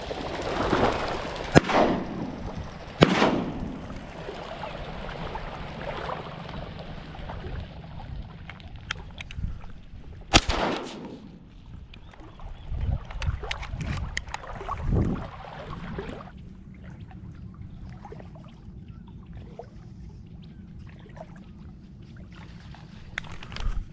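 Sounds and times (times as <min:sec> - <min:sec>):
shotgun shots with echo: 0:01.5 - 0:04.0, 0:10.3 - 0:11.4.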